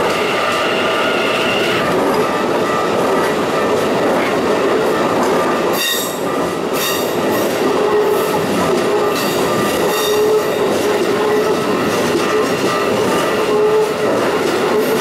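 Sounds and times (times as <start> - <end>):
train wheels squealing: 0.0 - 2.9, 5.8 - 7.2, 7.9 - 14.0
train rail rumble: 0.0 - 15.0.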